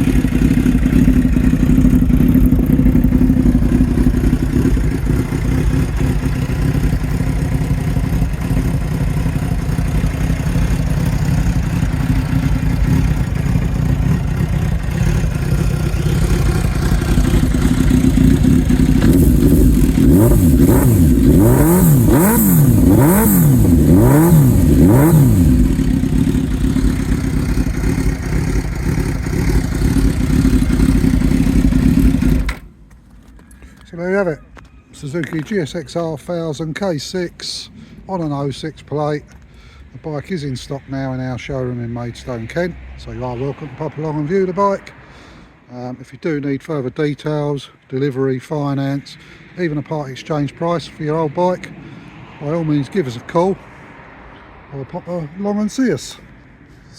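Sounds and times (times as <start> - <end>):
motorcycle engine idling and revving: 0.0 - 35.8, 48.7 - 56.9.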